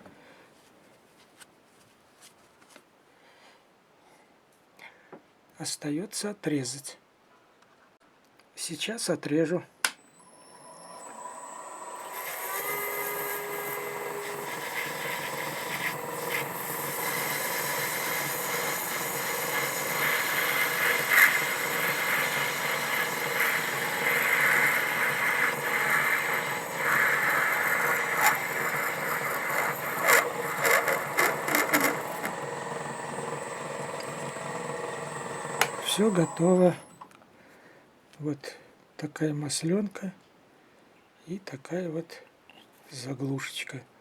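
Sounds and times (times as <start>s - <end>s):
lathe motor whine: 10.1s - 37.1s
tool cutting metal: 10.2s - 37.0s.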